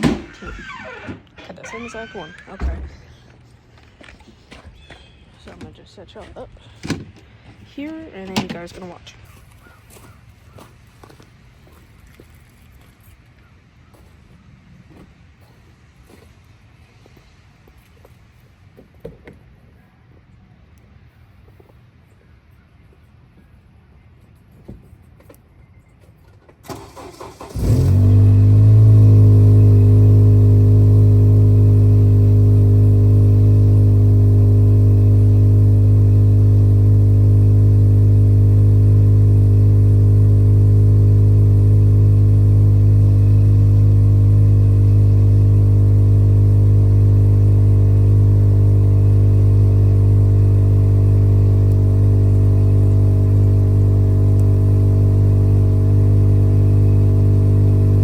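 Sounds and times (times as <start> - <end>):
car engine starting and idling: 0.0 - 9.0, 26.6 - 58.0.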